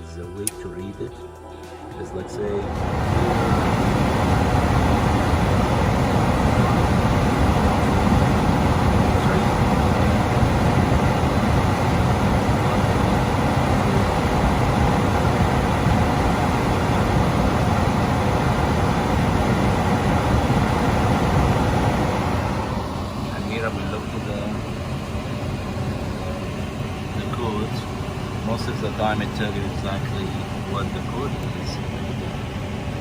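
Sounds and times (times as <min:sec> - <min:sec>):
furnace fan running: 0:00.0 - 0:33.0.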